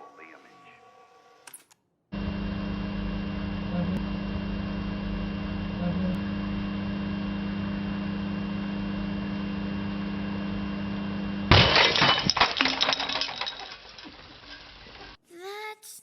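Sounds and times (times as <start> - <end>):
microwave oven humming: 2.1 - 15.2
glass breaking: 11.5 - 15.2
glass shards clinking: 11.5 - 15.2.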